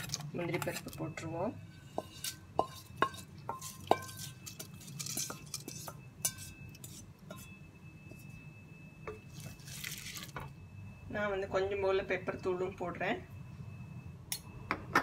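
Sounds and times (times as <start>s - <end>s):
spoon scraping metal pot: 1.7s - 7.6s
metal spoon clinking on pot: 1.9s - 7.6s.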